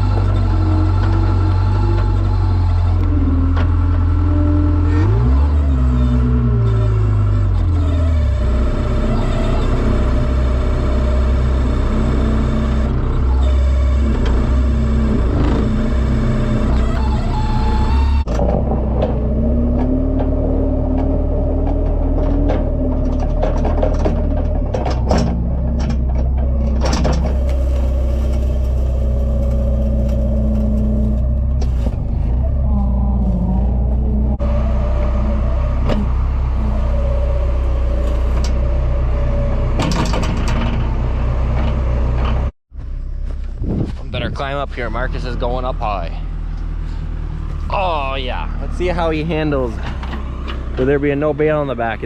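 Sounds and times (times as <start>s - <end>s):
farm machinery engine running: 0.0s - 52.0s
machine whine: 26.6s - 40.8s.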